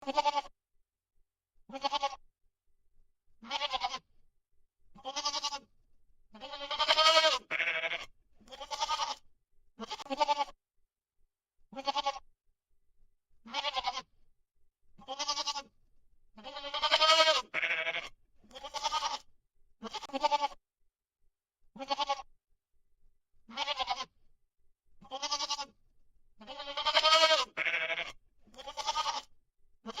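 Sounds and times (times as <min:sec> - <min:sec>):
goat bleating: 0:00.0 - 0:00.5, 0:01.7 - 0:02.2, 0:03.4 - 0:04.1, 0:04.9 - 0:05.7, 0:06.3 - 0:10.6, 0:11.7 - 0:12.3, 0:13.4 - 0:14.1, 0:15.0 - 0:15.7, 0:16.4 - 0:20.6, 0:21.8 - 0:22.3, 0:23.5 - 0:24.2, 0:25.0 - 0:25.8, 0:26.4 - 0:30.0.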